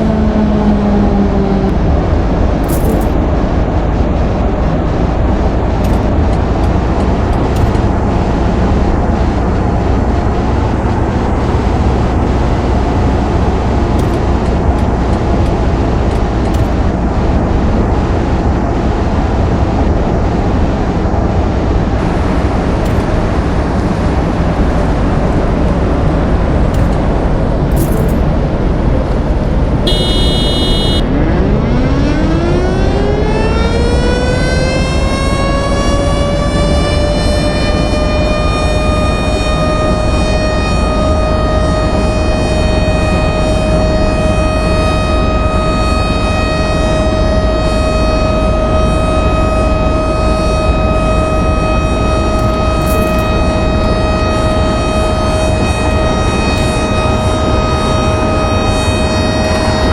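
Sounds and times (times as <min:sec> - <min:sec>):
rumble and hiss: 0:00.2 - 0:31.0.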